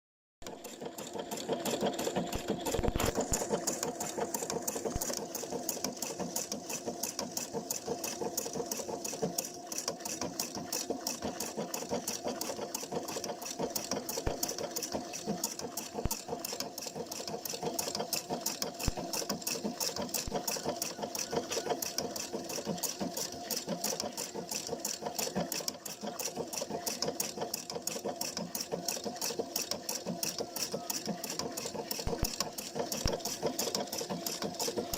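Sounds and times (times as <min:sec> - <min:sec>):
sewing machine stitching: 0:00.4 - 0:34.9.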